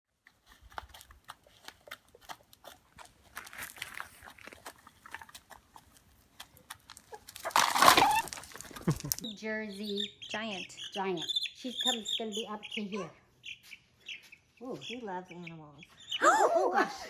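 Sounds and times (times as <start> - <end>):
animal crunching food: 0.1 - 9.3.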